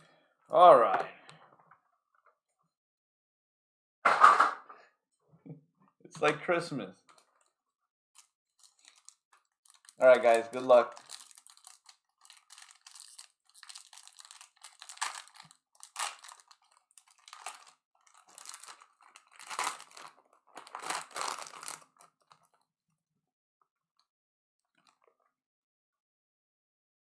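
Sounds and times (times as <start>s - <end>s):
card pack wrapper tearing: 8.2s - 22.5s.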